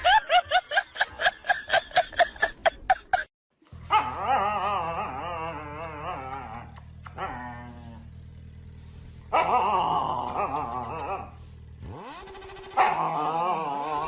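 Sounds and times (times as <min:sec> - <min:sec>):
dog yapping: 0:03.8 - 0:07.6, 0:09.3 - 0:11.4, 0:12.7 - 0:14.0
long wavering cry: 0:04.1 - 0:08.0.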